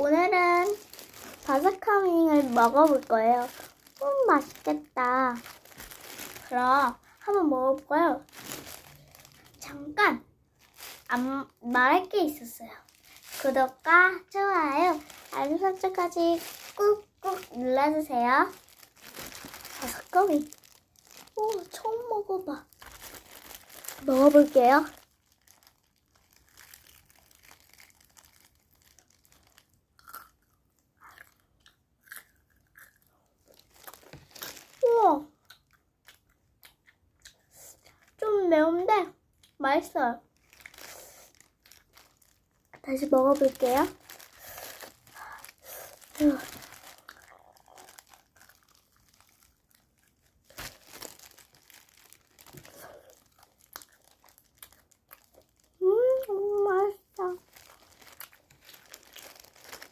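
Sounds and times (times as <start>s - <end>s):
crunchy food being chewed: 25.1s - 38.1s, 46.6s - 55.8s, 57.4s - 59.9s.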